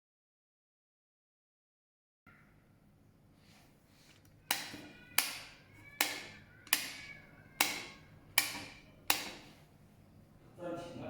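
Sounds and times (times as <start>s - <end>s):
switch clicking: 4.5s - 7.0s, 7.6s - 9.5s.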